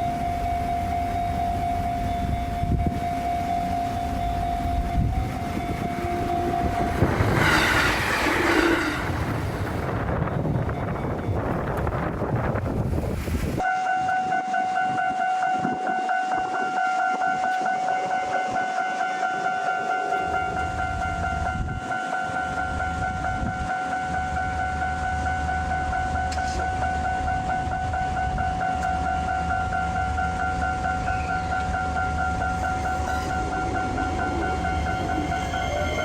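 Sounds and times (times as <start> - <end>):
level-crossing warning bell: 0.0 - 12.6, 13.6 - 36.0
train rumble: 0.0 - 13.6, 15.5 - 36.0
wind noise: 0.9 - 13.6, 20.2 - 21.9, 22.5 - 24.6, 29.4 - 36.0.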